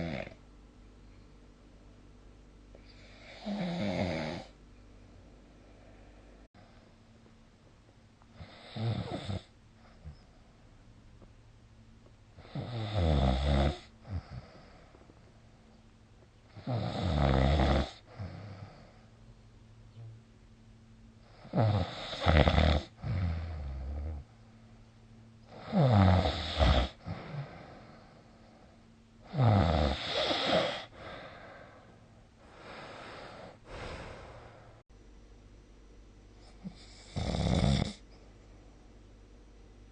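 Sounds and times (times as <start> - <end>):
person snoring: 0.0 - 0.4, 2.8 - 4.6, 8.4 - 9.5, 12.4 - 14.7, 16.5 - 19.0, 21.3 - 24.3, 25.5 - 28.2, 29.2 - 34.8, 36.4 - 38.0
quiet breaths: 0.0 - 11.3, 12.0 - 20.1, 21.0 - 34.9, 36.2 - 39.9
faint breath sound: 4.9 - 7.1, 30.0 - 34.9.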